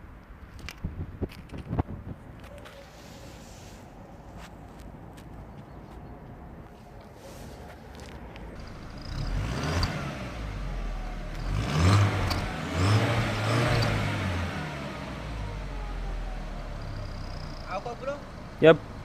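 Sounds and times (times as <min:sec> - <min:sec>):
car engine revving: 0:08.5 - 0:19.0.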